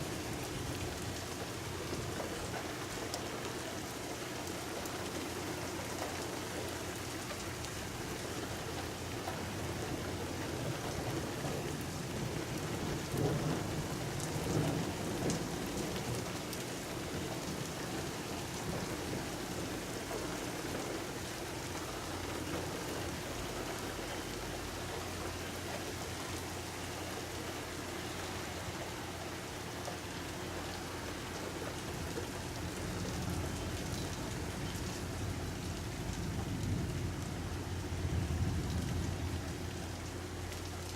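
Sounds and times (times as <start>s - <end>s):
steady rain: 0.0s - 40.9s
thunder rumbling: 32.3s - 40.0s.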